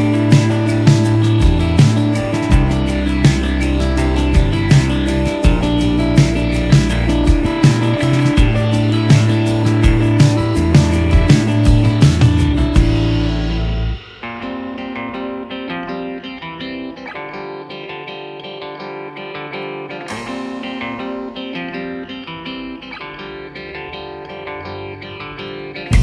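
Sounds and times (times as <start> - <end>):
plucked guitar music: 0.0 - 26.0.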